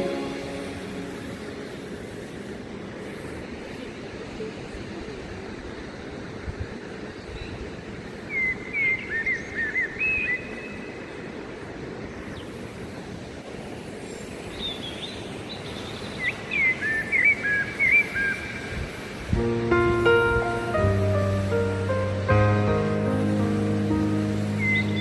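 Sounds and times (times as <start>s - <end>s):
waterfall rushing: 0.0s - 3.6s, 19.0s - 25.0s
songbird whistling: 24.4s - 25.0s.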